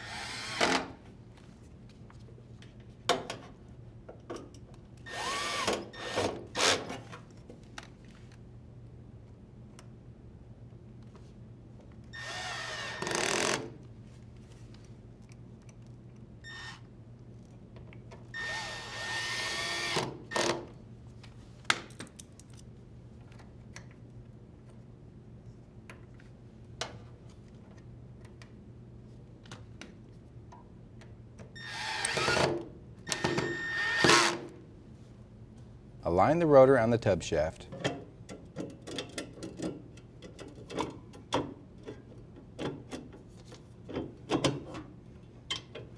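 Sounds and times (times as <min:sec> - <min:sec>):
drill driver whirring: 0:00.0 - 0:01.0, 0:05.1 - 0:06.8, 0:12.2 - 0:13.7, 0:18.4 - 0:20.6, 0:31.6 - 0:34.5.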